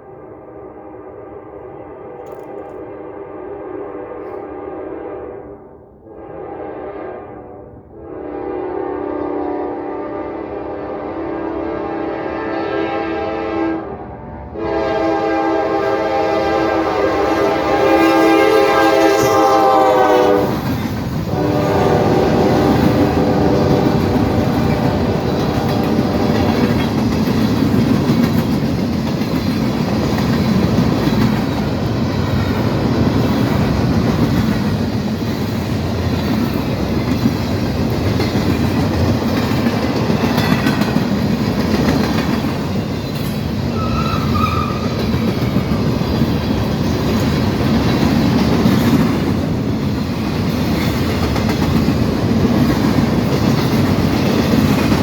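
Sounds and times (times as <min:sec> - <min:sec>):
locomotive air horn blast: 0:00.0 - 0:20.7, 0:21.3 - 0:26.7, 0:43.7 - 0:45.0
train rumbling past: 0:00.0 - 0:55.0
wheels clacking over rail joints: 0:22.3 - 0:55.0.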